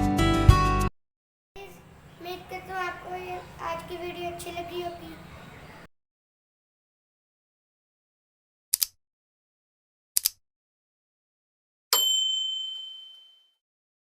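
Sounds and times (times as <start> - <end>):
double clicks: 8.7 - 9.0, 10.2 - 10.4
bright bell ding: 11.9 - 13.6.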